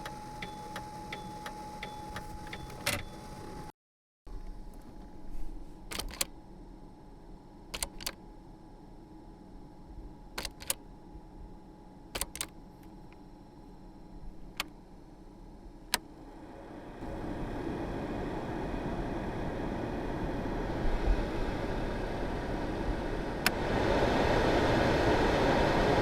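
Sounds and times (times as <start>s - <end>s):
sharp mechanical clicks: 5.9s - 6.3s, 7.7s - 8.2s, 10.4s - 10.8s, 12.1s - 13.2s.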